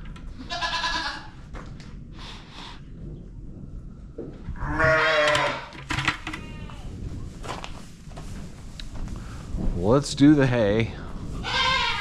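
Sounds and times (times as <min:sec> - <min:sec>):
goats bleating: 0:00.5 - 0:01.3, 0:11.4 - 0:12.0.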